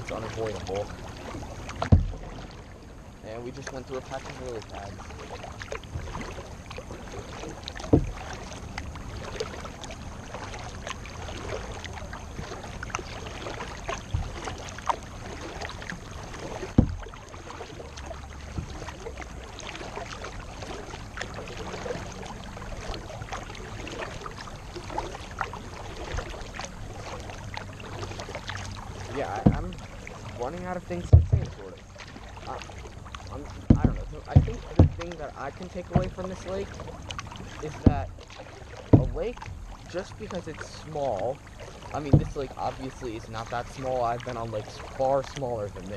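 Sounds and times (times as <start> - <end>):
paddle splashing in water: 0.0 - 45.9
sharp knocks: 1.8 - 2.2, 16.7 - 17.1, 29.4 - 29.7, 31.0 - 31.6, 33.6 - 35.2, 35.9 - 36.3, 38.9 - 39.4.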